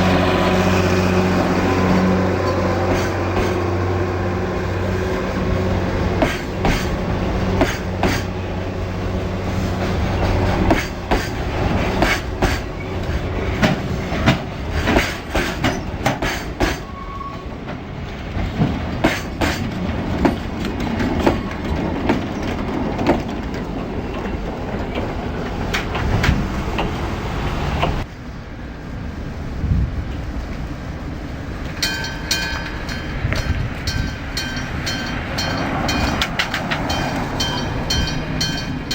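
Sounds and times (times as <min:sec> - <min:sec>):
train wheels clicking over rail joints: 0:00.1 - 0:03.8, 0:04.7 - 0:28.1, 0:30.0 - 0:38.9
high wheel squeal: 0:15.6 - 0:17.6.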